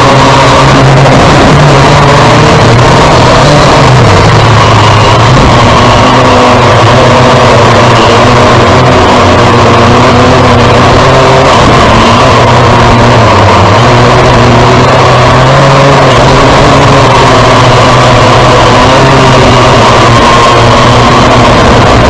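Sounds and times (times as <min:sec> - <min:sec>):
quadcopter propellers buzzing: 0:00.0 - 0:22.0.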